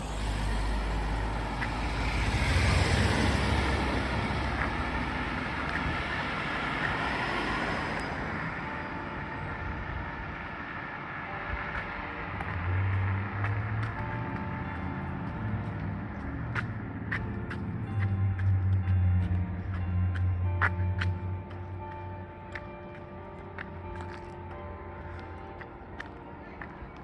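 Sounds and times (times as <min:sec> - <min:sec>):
vehicle passing by: 0:00.0 - 0:09.6
faint church bell: 0:00.0 - 0:27.0.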